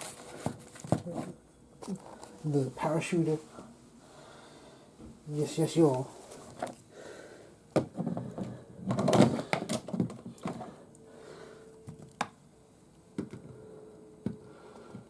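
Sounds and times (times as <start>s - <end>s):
plastic toys clicking and clattering: 8.0s - 10.7s.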